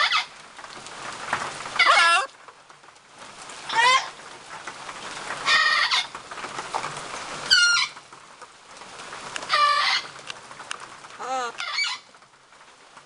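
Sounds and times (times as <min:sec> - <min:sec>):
parrot calls: 0:01.8 - 0:02.3, 0:03.7 - 0:04.1, 0:05.4 - 0:06.1, 0:09.5 - 0:10.1, 0:11.2 - 0:12.1.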